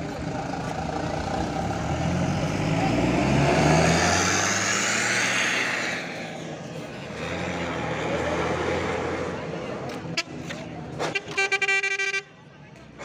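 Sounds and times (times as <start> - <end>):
bus engine accelerating past: 0.0 - 11.0.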